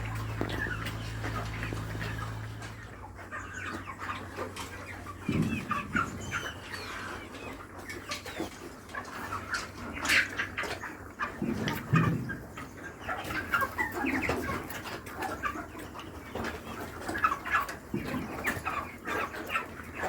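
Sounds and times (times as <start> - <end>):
low hum: 0.0 - 3.1
chickens clucking: 0.0 - 20.0.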